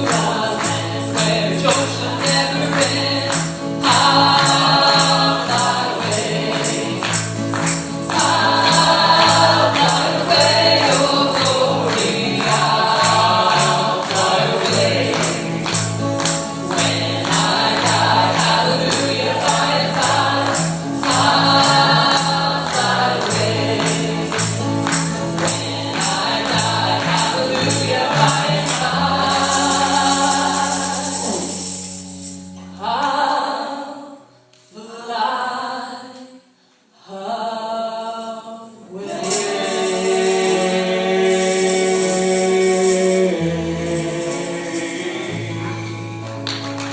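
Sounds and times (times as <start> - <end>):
tambourine beat: 0.0 - 32.6, 39.0 - 46.9
gospel singers in harmony: 0.0 - 46.5.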